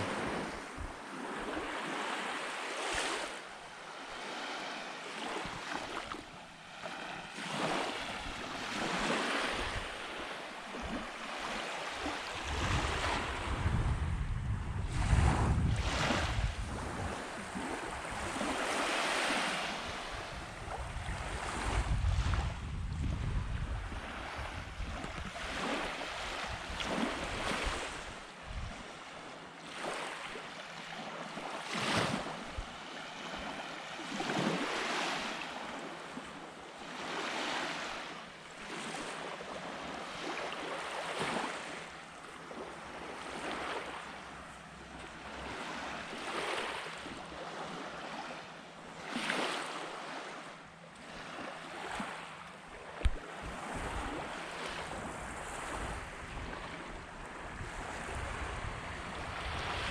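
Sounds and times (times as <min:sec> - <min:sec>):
small waves breaking on sand: 0:00.0 - 0:59.9
wind buffeting microphone: 0:12.4 - 0:18.5, 0:19.9 - 0:28.9, 0:53.0 - 0:59.9.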